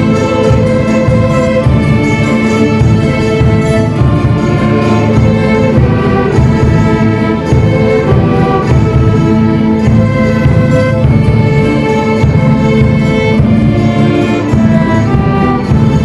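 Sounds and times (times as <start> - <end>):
instrumental orchestral music: 0.0 - 16.0.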